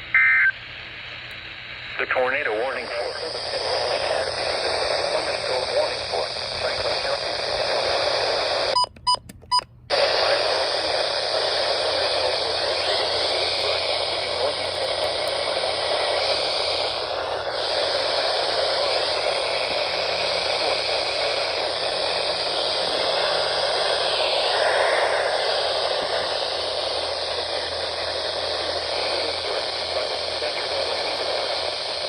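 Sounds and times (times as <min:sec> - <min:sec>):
radio static hiss: 0:00.0 - 0:08.8, 0:09.9 - 0:32.0.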